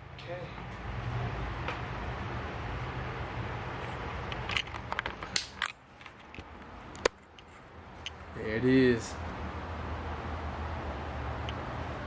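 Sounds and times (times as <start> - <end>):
parts clicking and knocking: 4.1 - 8.2.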